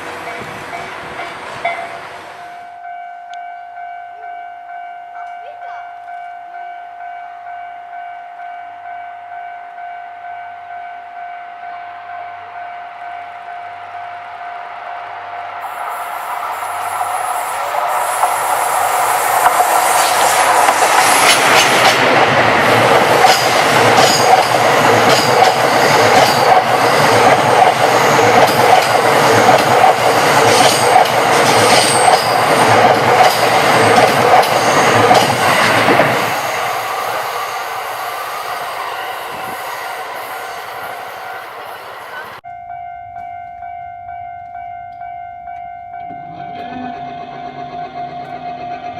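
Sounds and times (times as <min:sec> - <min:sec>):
level crossing warning bell: 0:00.3 - 0:14.3, 0:42.0 - 0:48.5
train wheels clattering: 0:16.2 - 0:36.6
wheel squeal: 0:46.6 - 0:48.9.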